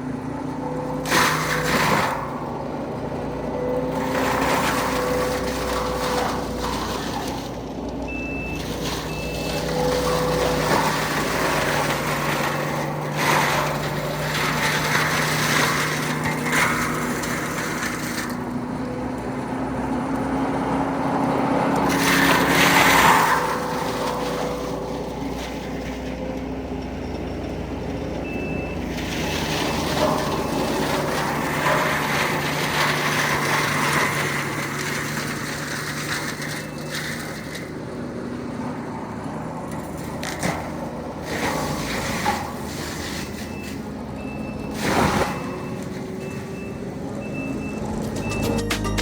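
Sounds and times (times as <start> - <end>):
heavy equipment engine running: 0.0 - 49.0
reversing alarm beeping: 8.1 - 10.4, 28.2 - 28.9, 29.6 - 31.1, 43.5 - 49.0.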